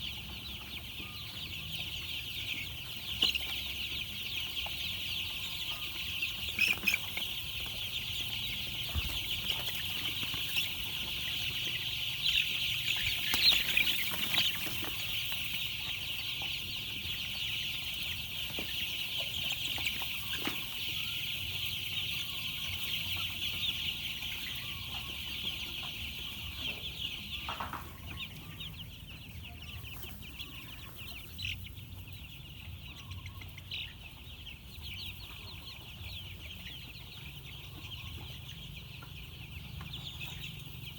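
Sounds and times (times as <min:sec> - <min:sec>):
chicks peeping: 0:00.0 - 0:40.9.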